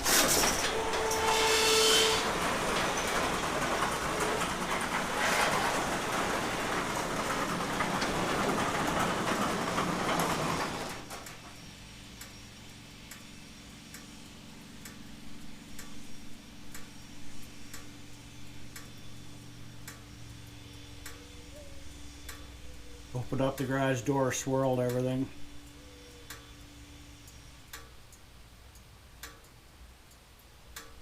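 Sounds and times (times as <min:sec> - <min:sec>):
light ticking: 0:11.1 - 0:21.5, 0:22.2 - 0:31.0.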